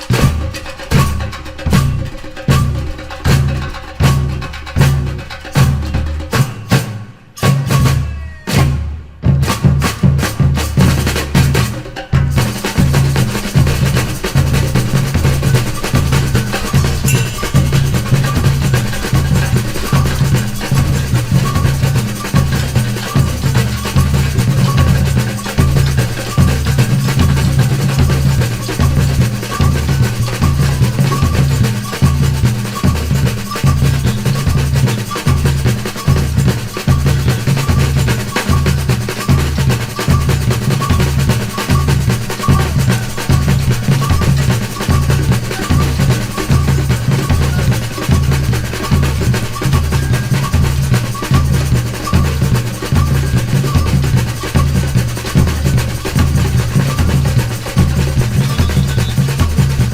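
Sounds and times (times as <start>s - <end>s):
snare and hand percussion: 0.0s - 59.9s
deep bass drums: 9.3s - 59.9s
lighter quick drum strokes: 9.5s - 59.9s.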